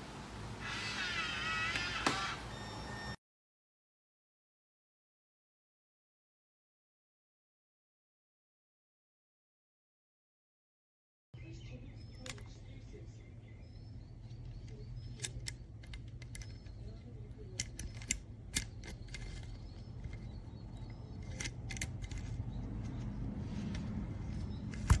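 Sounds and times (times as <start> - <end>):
sharp metallic clicks: 14.5 - 23.1.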